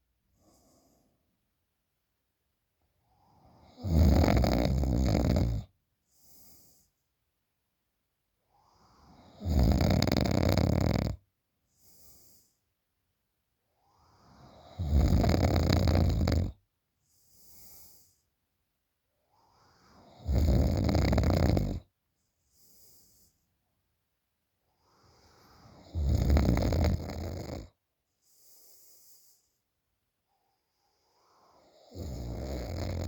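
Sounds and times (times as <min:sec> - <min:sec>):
faint breath: 0:00.3 - 0:01.4, 0:06.0 - 0:07.2, 0:11.6 - 0:12.7, 0:17.0 - 0:18.4, 0:22.2 - 0:23.6, 0:24.7 - 0:25.8, 0:28.1 - 0:29.7
woman snoring: 0:03.2 - 0:06.8, 0:08.7 - 0:11.2, 0:14.1 - 0:16.6, 0:19.8 - 0:21.9, 0:25.0 - 0:29.4, 0:31.1 - 0:33.0.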